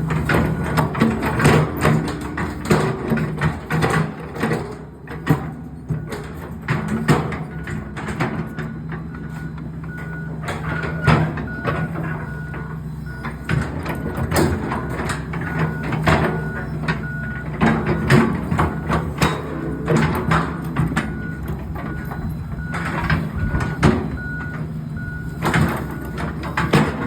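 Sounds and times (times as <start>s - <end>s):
heavy machine engine: 0.0s - 27.0s
metal and rock clanking: 0.0s - 27.0s
backup alarm beeping: 7.4s - 27.0s.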